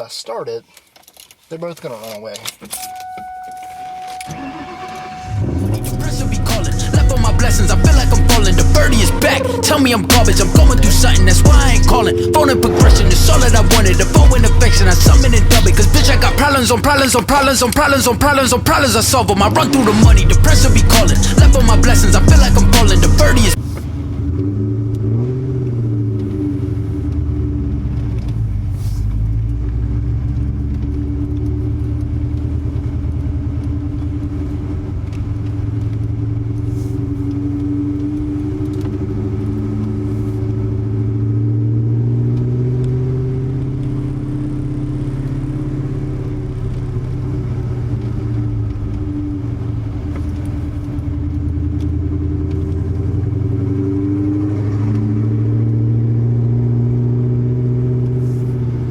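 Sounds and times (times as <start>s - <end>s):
deep car exhaust note: 4.2s - 17.2s, 17.9s - 30.6s.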